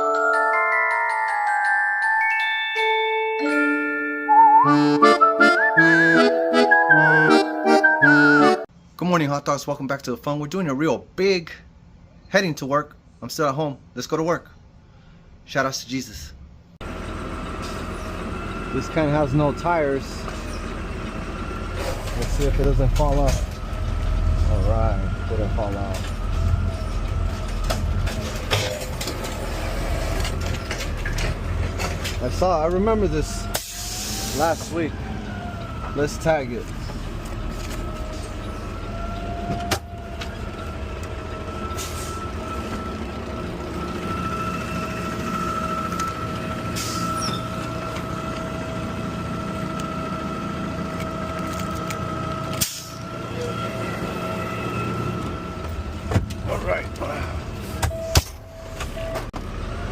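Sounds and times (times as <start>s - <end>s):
garbage truck engine rumbling: 16.8s - 59.9s.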